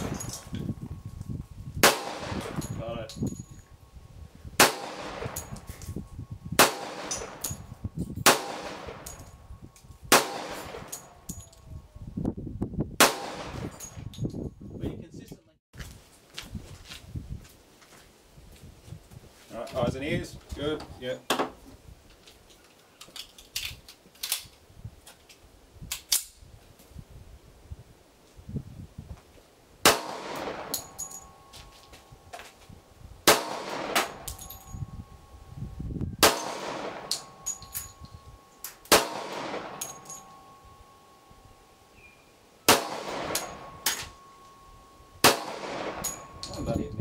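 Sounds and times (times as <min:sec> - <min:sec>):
pistol shots: 0:01.8 - 0:02.8, 0:04.6 - 0:05.6, 0:06.6 - 0:07.6, 0:08.2 - 0:09.2, 0:10.1 - 0:11.2, 0:13.0 - 0:13.8, 0:29.8 - 0:31.5, 0:33.2 - 0:34.5, 0:36.2 - 0:37.8, 0:38.7 - 0:40.5, 0:42.6 - 0:44.4, 0:45.2 - 0:46.6.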